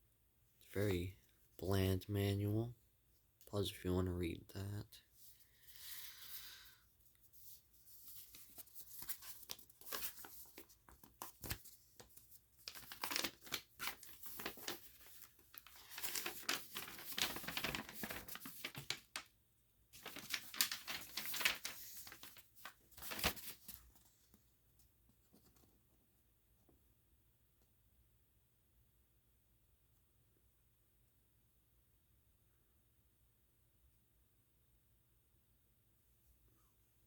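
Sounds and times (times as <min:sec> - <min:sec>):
paper sheets rustling: 0:07.3 - 0:19.3, 0:20.0 - 0:24.3.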